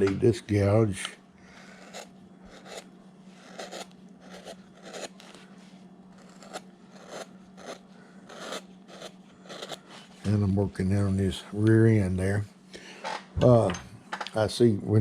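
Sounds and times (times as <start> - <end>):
faint steady hum: 0.0 - 15.0
carving gouge scraping wood: 1.7 - 5.4, 6.2 - 10.0.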